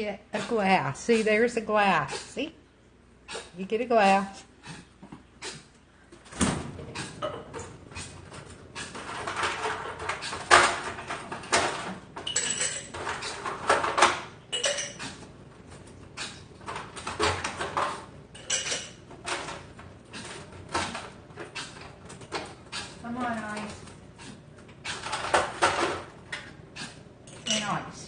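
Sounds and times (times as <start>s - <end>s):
glass and kitchen items clinking: 7.2s - 7.7s, 9.0s - 15.1s, 17.0s - 19.7s, 27.3s - 27.8s.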